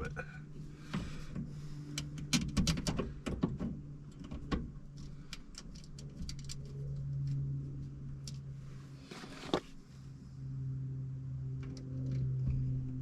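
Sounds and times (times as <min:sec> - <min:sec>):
steady low hum: 0:00.0 - 0:13.0
latch clicks and knocks: 0:02.0 - 0:04.7.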